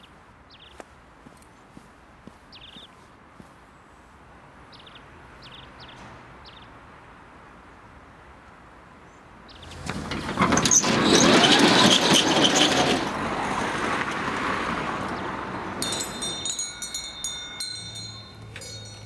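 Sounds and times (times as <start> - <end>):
road vehicle passing by: 9.4 - 19.0
bright ringing tones: 15.8 - 19.0.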